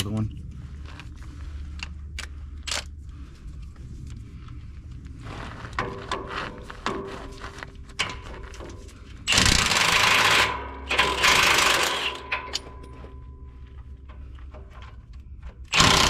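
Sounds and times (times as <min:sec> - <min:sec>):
impact wrench hammering: 0:09.3 - 0:12.8, 0:15.7 - 0:16.0
tools clicking: 0:09.3 - 0:13.0.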